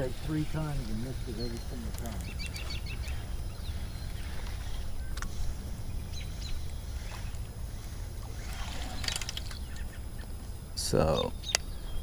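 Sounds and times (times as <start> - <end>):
bird chirps: 0.0 - 12.0
low steady rumble: 0.0 - 12.0
sharp clicks: 5.1 - 5.3.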